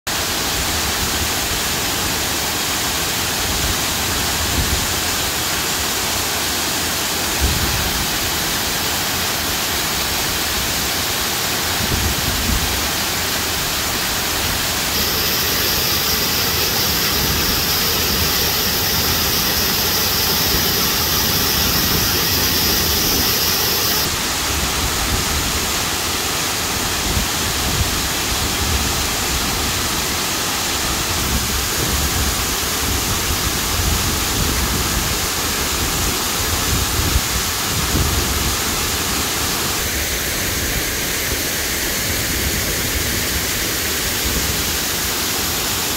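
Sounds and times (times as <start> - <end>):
waterfall rushing: 0.1 - 34.0
high steady whine: 12.1 - 24.8.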